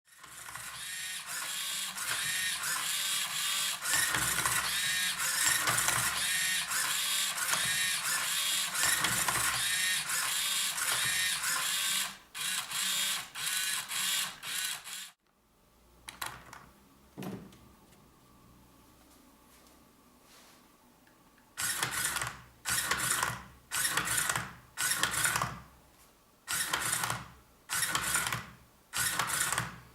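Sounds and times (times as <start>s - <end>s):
servo motors whining: 0.4s - 15.1s.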